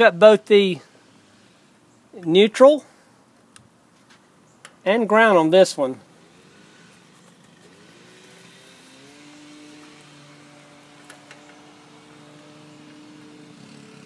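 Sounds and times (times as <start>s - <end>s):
engine hum: 6.0s - 14.0s.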